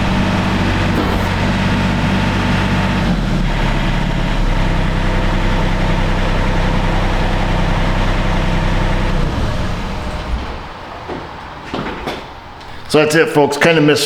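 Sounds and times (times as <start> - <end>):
diesel engine running: 0.0 - 10.8.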